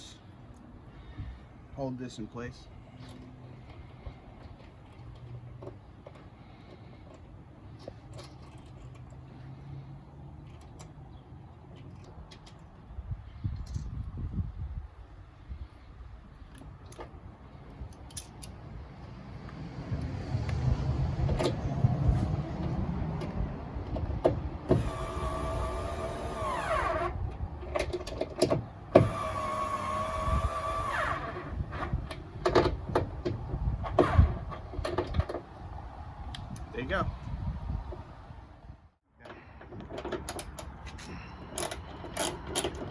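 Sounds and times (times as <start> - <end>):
tools and metal parts clicking: 4.6 - 9.2
cordless drill motor whine: 29.0 - 31.6.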